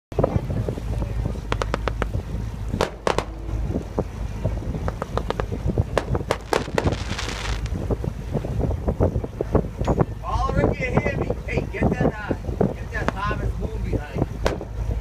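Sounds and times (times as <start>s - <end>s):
low rumble: 0.1s - 15.0s
wind buffeting microphone: 0.1s - 15.0s
firecrackers popping: 1.5s - 2.2s, 2.8s - 3.4s, 4.9s - 7.7s
hissing rush: 1.6s - 7.7s.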